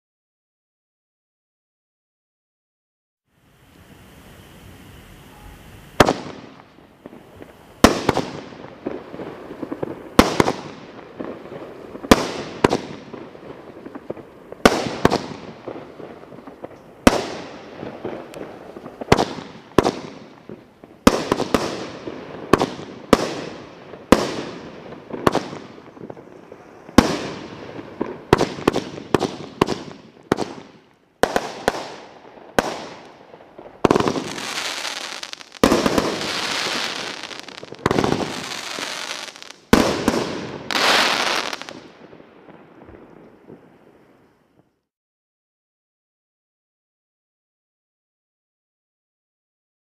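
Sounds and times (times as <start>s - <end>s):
firework crackle: 3.3s - 44.8s
firework bangs: 5.3s - 43.8s.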